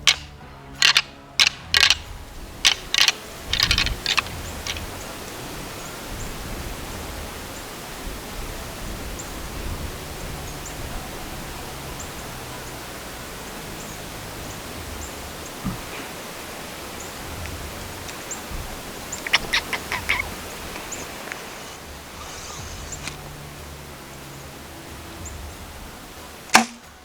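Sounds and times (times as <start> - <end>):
antlers clashing and rattling: 0.0 - 5.8, 14.1 - 24.0, 25.2 - 27.0
steady outdoor hiss: 0.0 - 27.0.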